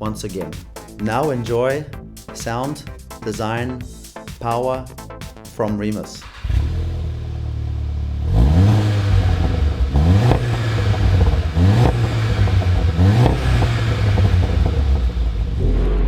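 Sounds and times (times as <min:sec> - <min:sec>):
car engine revving: 0:06.2 - 0:16.0.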